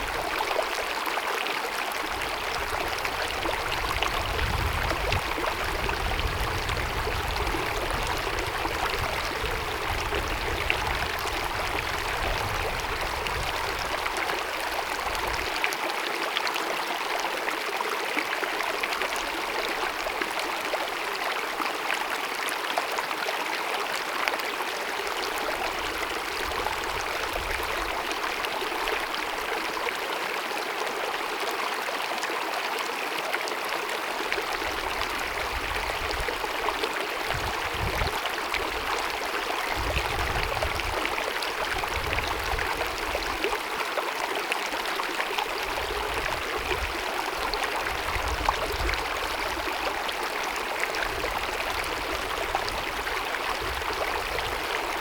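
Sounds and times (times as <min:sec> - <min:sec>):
low water rumbles: 0:00.0 - 0:15.7, 0:34.1 - 0:55.0
stream splashing over rocks: 0:00.0 - 0:55.0.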